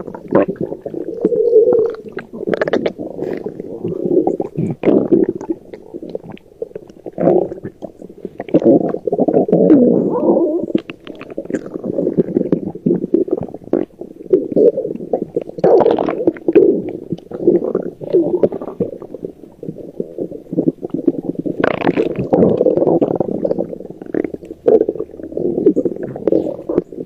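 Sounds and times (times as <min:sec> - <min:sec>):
stomach growling and gurgling: 0:00.0 - 0:27.0.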